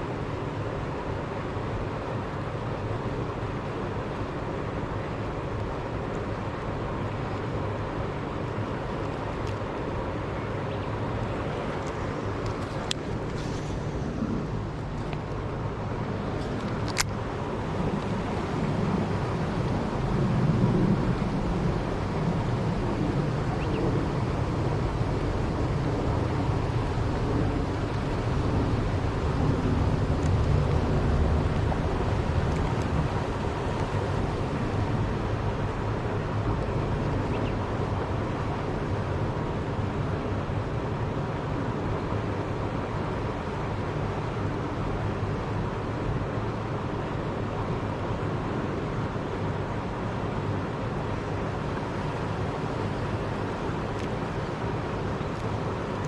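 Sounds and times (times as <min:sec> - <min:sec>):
faint hum: 0:00.0 - 0:56.0
low outdoor rumble: 0:00.0 - 0:56.0.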